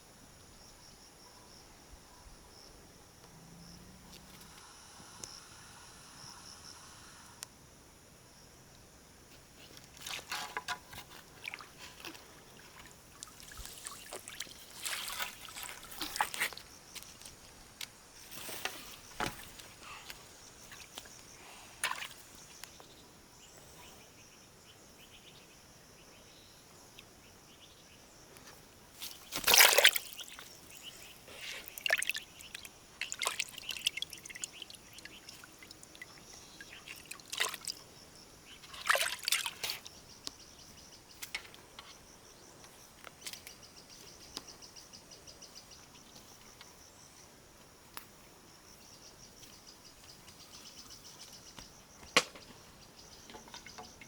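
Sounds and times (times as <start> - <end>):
water sloshing and trickling: 9.7 - 17.6, 21.8 - 22.4, 29.0 - 37.9, 38.5 - 40.0.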